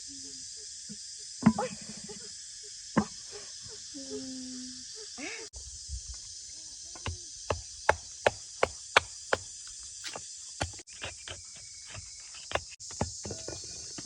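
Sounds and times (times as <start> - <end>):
tool striking wood: 7.0 - 13.6.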